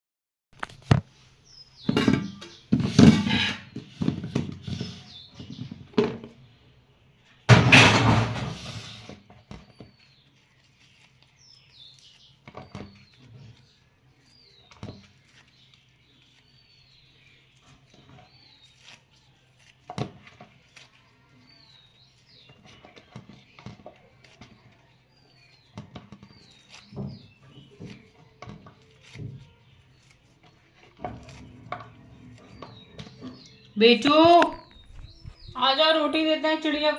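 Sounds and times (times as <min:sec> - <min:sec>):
small birds chirping: 0:01.2 - 0:07.5, 0:08.6 - 0:36.9
loud knocks: 0:07.5 - 0:08.8
rustling: 0:09.9 - 0:36.9.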